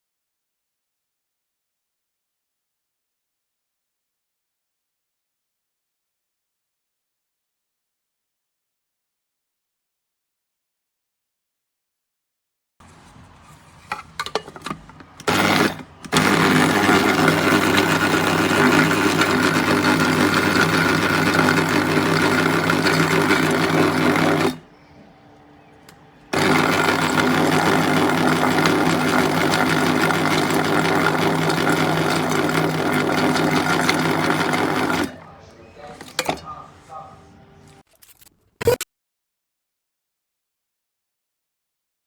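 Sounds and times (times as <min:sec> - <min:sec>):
coffee grinder whirring: 0:15.2 - 0:24.7, 0:25.9 - 0:35.2
clicks: 0:25.8 - 0:26.0.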